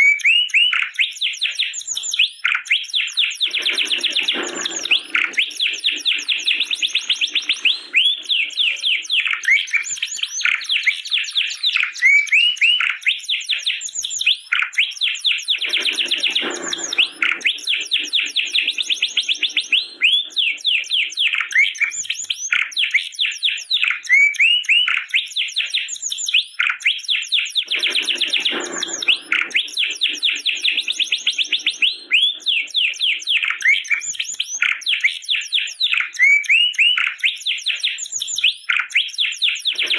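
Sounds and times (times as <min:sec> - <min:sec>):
canary singing in fast trills: 0:00.2 - 0:39.9.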